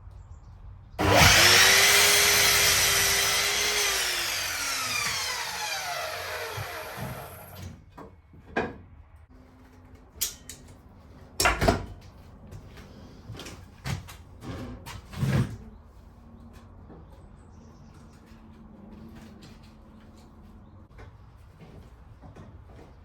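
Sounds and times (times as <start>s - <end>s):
jigsaw motor winding down: 1.0s - 7.7s.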